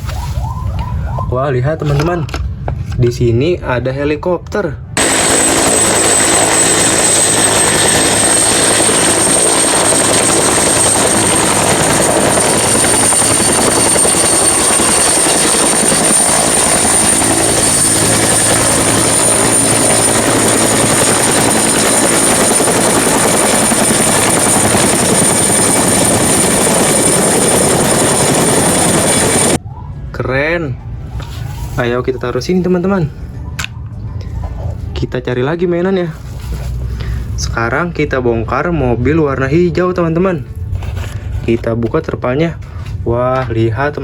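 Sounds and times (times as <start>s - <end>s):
helicopter rotor and engine: 5.0s - 29.6s
high whine: 5.0s - 29.6s.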